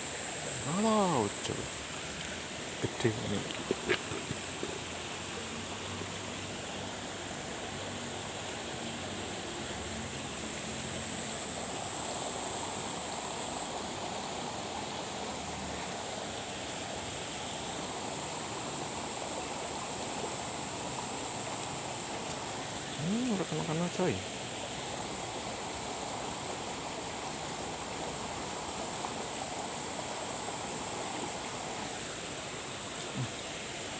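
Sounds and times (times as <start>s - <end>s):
running water rushing: 0.0s - 33.9s.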